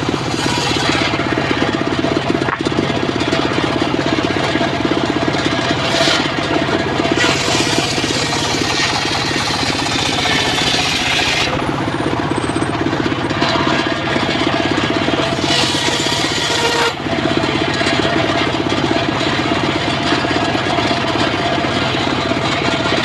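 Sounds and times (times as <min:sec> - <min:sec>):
saw blade hissing through log: 0:00.0 - 0:01.2, 0:07.2 - 0:11.6, 0:15.3 - 0:17.0
engine-powered circular saw running: 0:00.0 - 0:23.0.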